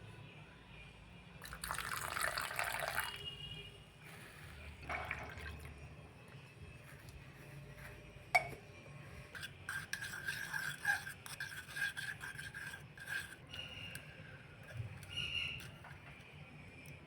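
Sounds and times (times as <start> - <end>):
spoon scraping a dish: 6.7 - 16.4.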